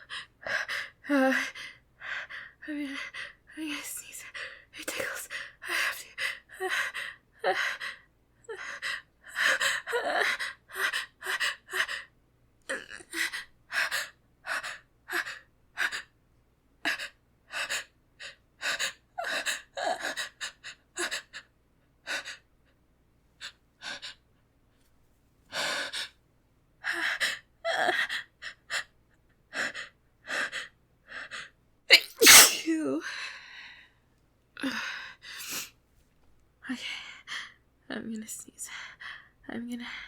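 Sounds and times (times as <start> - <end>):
woman gasping before a sneeze: 31.9 - 32.8.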